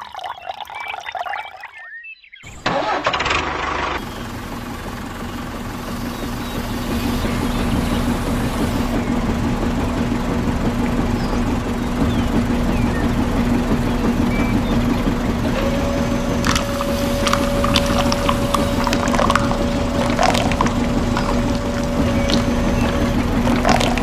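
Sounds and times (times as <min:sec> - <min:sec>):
small motor humming: 0:03.3 - 0:24.0
higher steady whine: 0:04.0 - 0:24.0.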